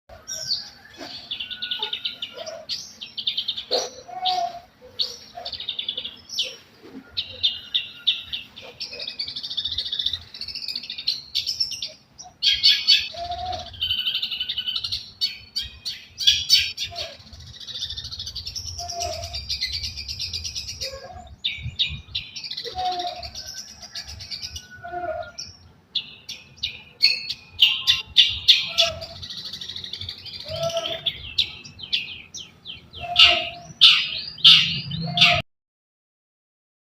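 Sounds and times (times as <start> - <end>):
bird singing with chirping: 0.1 - 35.4
high bird chattering: 27.0 - 35.4.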